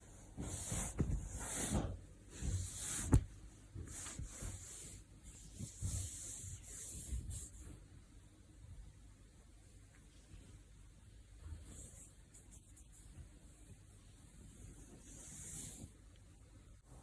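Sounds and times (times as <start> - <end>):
rubbing against microphone: 0.2 - 7.8.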